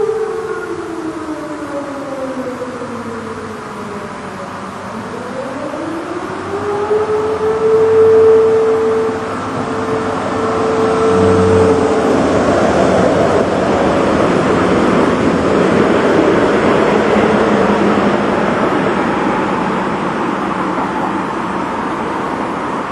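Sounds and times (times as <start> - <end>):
passing vehicle: 0.0 - 22.9
steady tone: 8.4 - 22.8.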